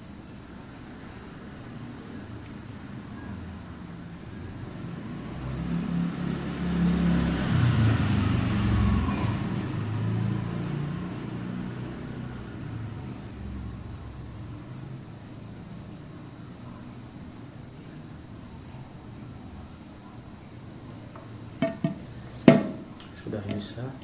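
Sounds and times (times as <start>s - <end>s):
vehicle engine passing by: 3.0s - 20.2s.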